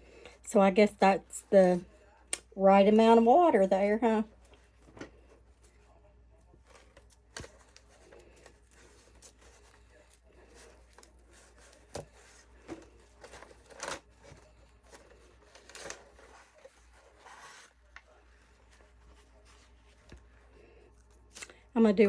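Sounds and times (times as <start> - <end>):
rustling: 4.3 - 21.4.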